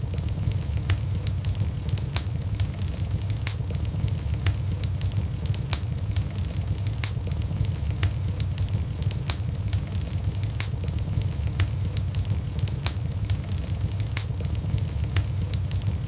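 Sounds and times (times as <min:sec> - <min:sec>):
low rumble of flames: 0:00.0 - 0:16.0
wood fire crackling and popping: 0:00.0 - 0:16.0.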